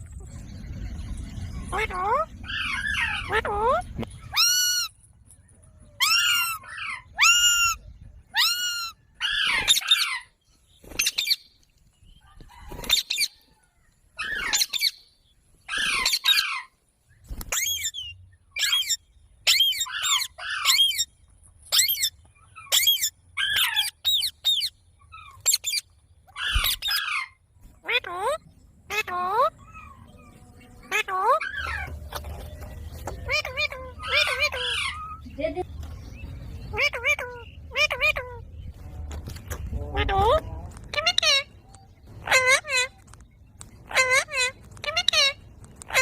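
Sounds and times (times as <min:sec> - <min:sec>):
parrot screeching: 0:01.7 - 0:04.9, 0:06.0 - 0:10.3, 0:14.2 - 0:14.9, 0:15.7 - 0:16.7, 0:18.6 - 0:21.0, 0:21.8 - 0:28.1, 0:33.3 - 0:35.2, 0:36.7 - 0:38.4, 0:42.2 - 0:43.0, 0:43.9 - 0:46.0.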